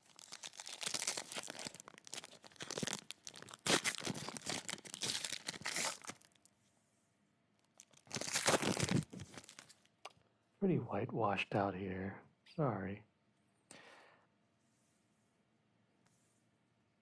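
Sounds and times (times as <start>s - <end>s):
plastic foil wrapper crinkling: 0.0s - 6.5s, 7.7s - 9.9s.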